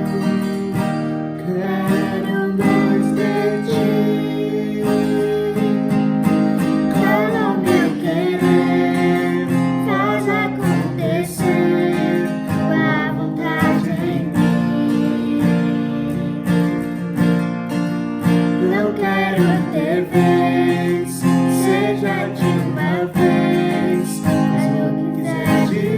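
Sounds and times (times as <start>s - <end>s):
acoustic guitar strumming chords: 0.0s - 25.9s
wavering melody with vibrato: 1.6s - 17.4s.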